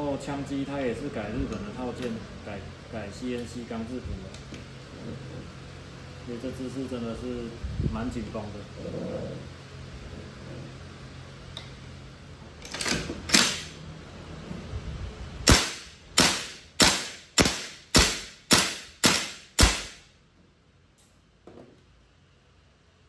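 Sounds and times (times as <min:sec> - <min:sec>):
airsoft rifle shots: 0:15.4 - 0:20.0.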